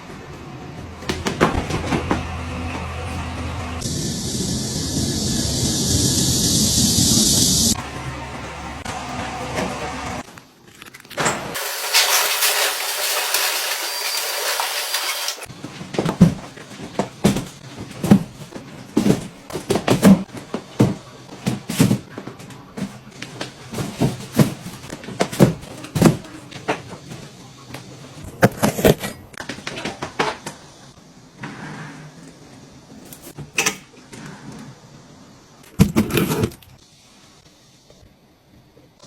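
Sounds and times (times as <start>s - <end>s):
loud steady hiss: 2.4s - 10.2s.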